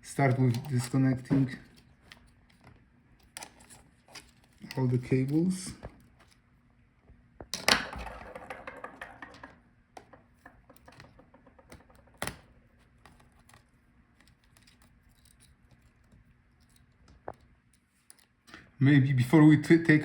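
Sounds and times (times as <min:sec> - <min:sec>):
crackly scratching: 0:00.2 - 0:06.6, 0:12.7 - 0:18.5.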